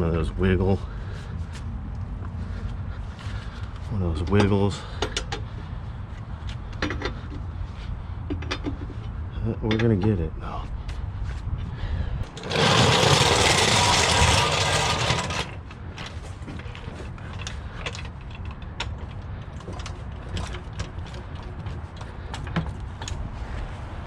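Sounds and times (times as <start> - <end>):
wrench ratcheting: 12.4 - 15.6.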